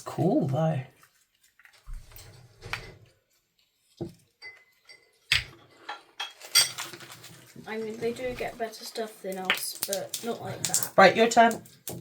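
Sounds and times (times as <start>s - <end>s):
packaging rustling: 6.4s - 12.0s
clicks and knocks of handled items: 9.4s - 12.0s.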